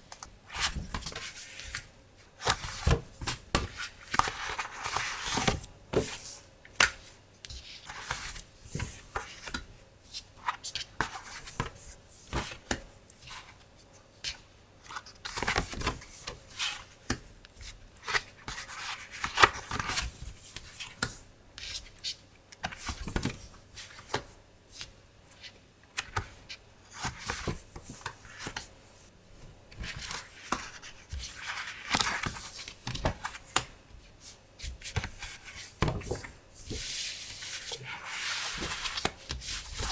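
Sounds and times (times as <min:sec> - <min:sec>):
paper and packaging rustling: 0:35.0 - 0:39.9.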